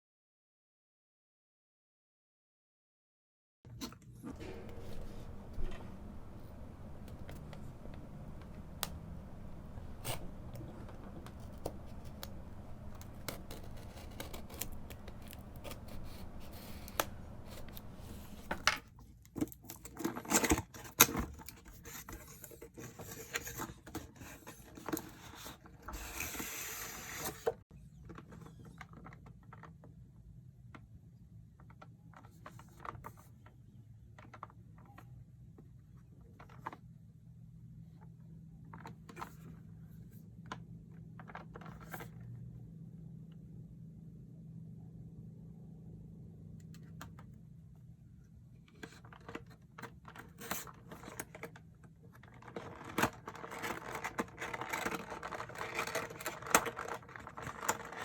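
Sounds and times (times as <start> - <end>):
packaging scrapes and clicks: 9.6 - 18.7, 19.4 - 27.6, 52.2 - 58.0
packaging rustling or tearing: 9.7 - 18.6, 52.2 - 58.0.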